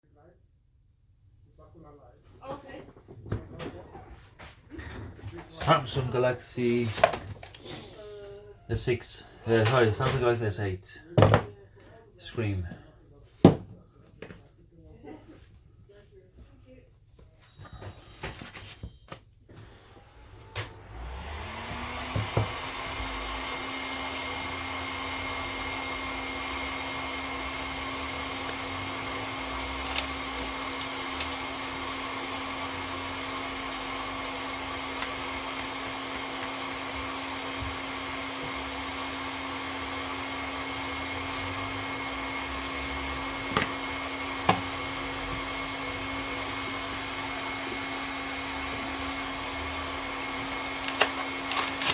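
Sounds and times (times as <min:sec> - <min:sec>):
heat gun blowing: 0:19.6 - 0:51.9.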